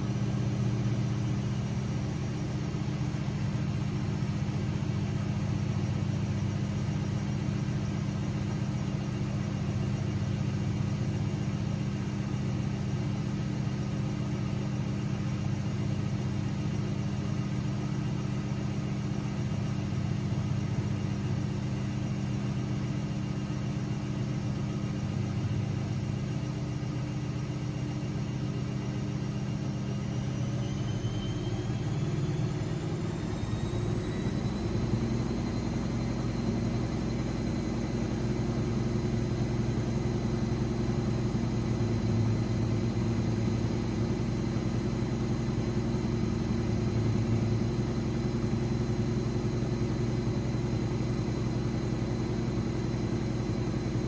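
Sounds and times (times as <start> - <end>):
motor hum and whine: 0.0 - 54.0
washing machine spinning: 0.0 - 54.0.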